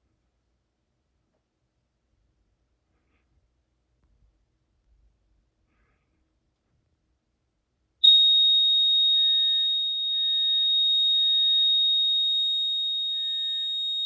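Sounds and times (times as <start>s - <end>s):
fire alarm high-pitched tone: 8.0s - 14.0s.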